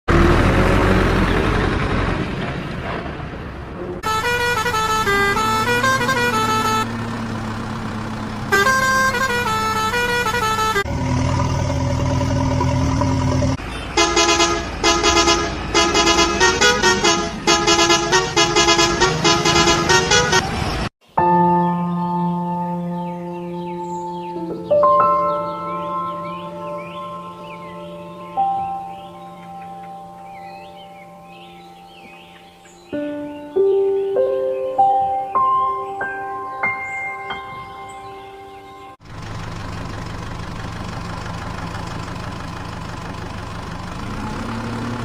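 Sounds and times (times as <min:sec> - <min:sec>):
steady horn tone: 0:04.0 - 0:07.2, 0:08.5 - 0:11.0, 0:13.5 - 0:20.6.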